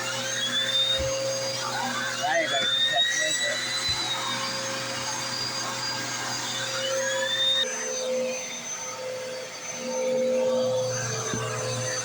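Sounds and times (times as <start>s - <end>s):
rising whistle: 0.0s - 7.7s
vacuum cleaner motor whine: 0.0s - 12.0s.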